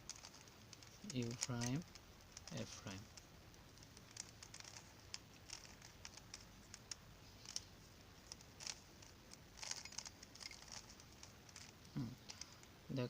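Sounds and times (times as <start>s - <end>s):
puzzle cube clicking: 0.0s - 12.8s.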